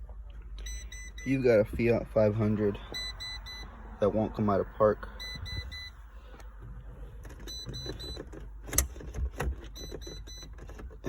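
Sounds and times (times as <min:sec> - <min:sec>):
car warning chime beeping: 0:00.6 - 0:06.1, 0:07.2 - 0:11.0.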